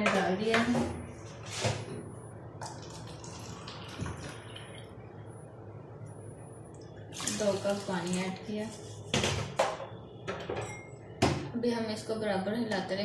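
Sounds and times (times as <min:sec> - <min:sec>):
water pouring into a pan: 0:02.7 - 0:04.8, 0:07.1 - 0:08.3.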